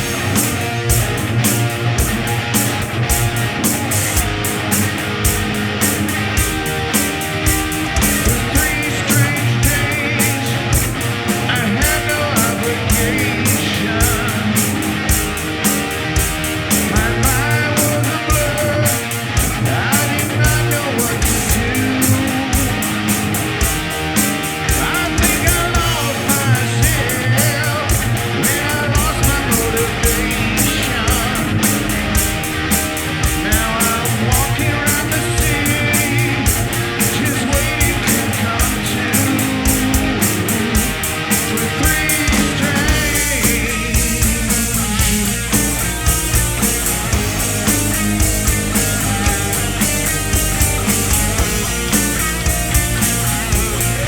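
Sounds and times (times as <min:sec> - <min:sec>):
driving drum beat: 0:00.0 - 0:54.0
rock band playing live: 0:00.0 - 0:54.0.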